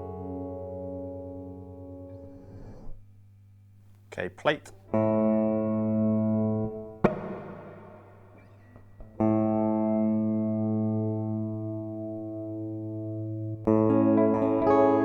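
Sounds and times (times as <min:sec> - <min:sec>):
guitar chords with reverb: 0:04.9 - 0:15.0.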